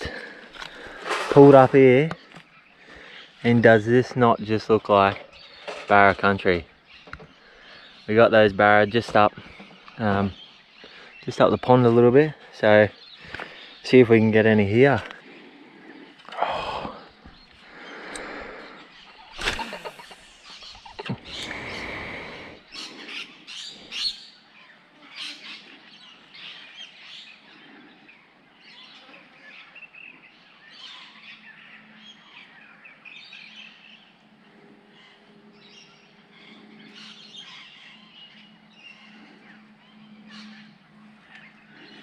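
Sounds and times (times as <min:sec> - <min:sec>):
birds chirping: 0:00.0 - 0:42.0.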